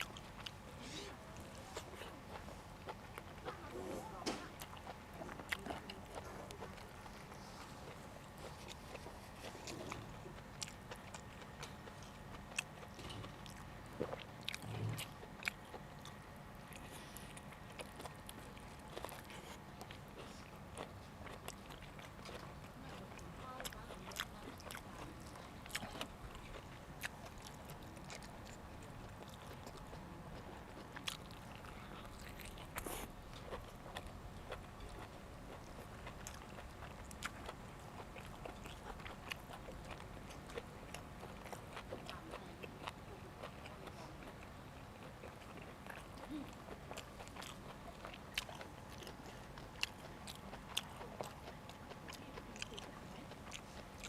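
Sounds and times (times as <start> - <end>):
chewing and biting food: 0.0 - 54.0.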